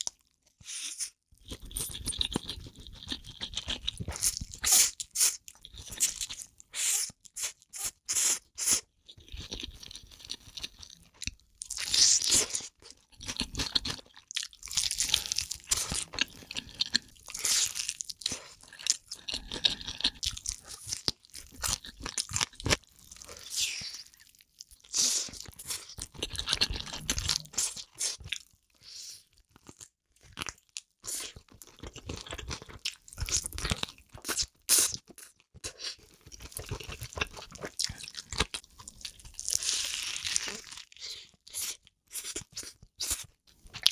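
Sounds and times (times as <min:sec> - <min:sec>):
chewing and crunching: 0:00.0 - 0:06.7, 0:08.8 - 0:43.9.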